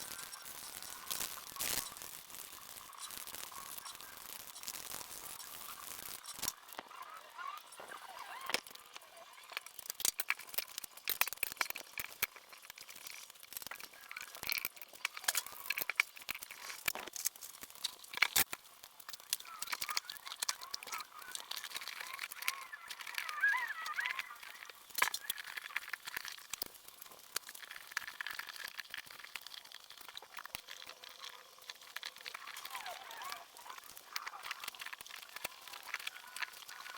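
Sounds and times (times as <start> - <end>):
faint bird chirps: 19.4 - 25.4.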